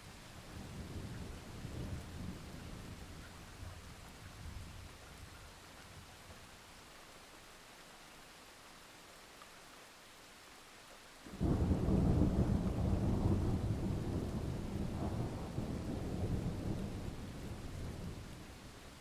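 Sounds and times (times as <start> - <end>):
rain hissing: 0.0 - 19.0
thunder rumble: 11.3 - 18.7.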